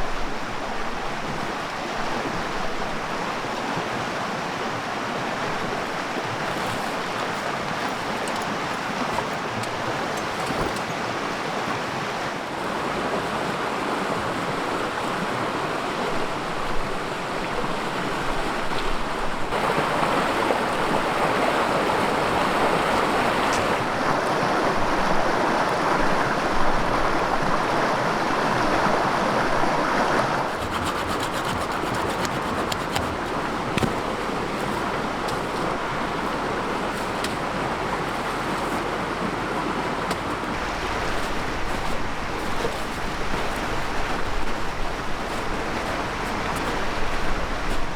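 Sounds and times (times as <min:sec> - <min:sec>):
river rushing: 0:19.5 - 0:47.9.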